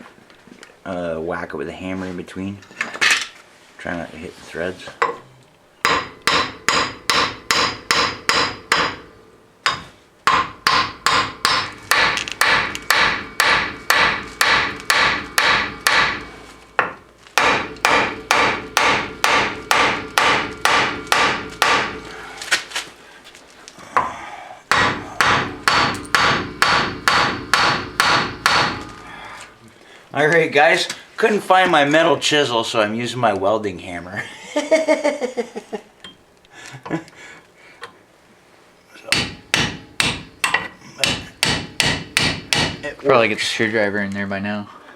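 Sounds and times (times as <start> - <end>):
hammer striking metal: 5.8 - 22.0, 24.0 - 29.1, 39.1 - 42.9.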